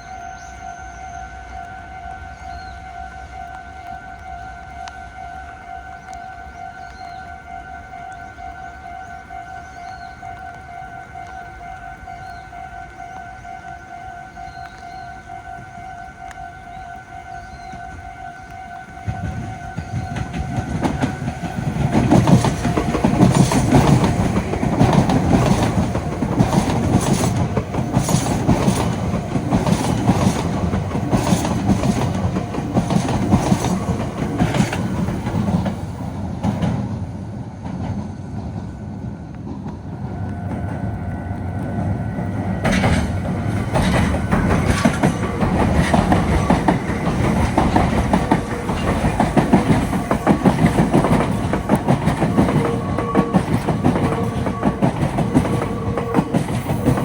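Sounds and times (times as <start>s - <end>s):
train wheels clacking over rails: 17.4s - 57.0s.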